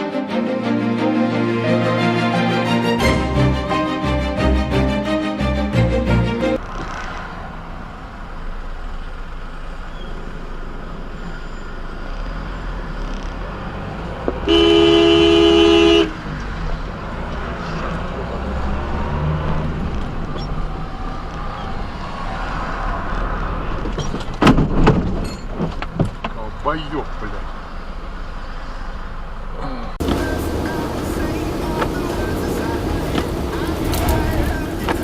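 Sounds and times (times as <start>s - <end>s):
car road and engine noise: 0.0s - 35.0s
car horn blast: 14.4s - 16.2s.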